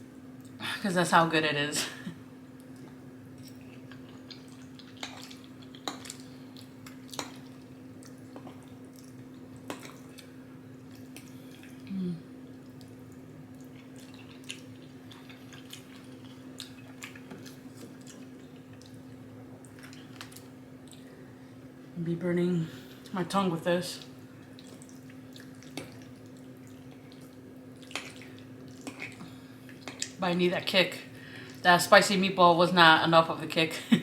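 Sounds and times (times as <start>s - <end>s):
steady low hum: 0.0s - 34.0s
person chewing: 2.6s - 12.0s, 12.6s - 19.0s, 24.4s - 30.2s
closed-mouth hum: 10.1s - 13.8s.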